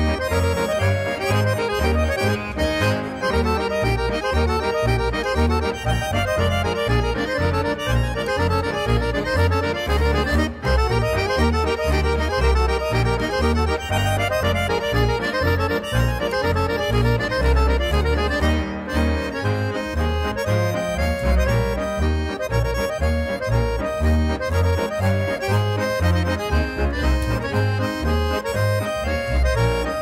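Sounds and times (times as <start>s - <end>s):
accordion folk dance music: 0.0s - 30.0s.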